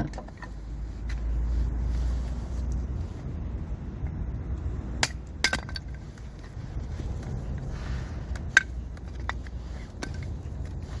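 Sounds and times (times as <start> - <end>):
low rumble: 0.5 - 11.0.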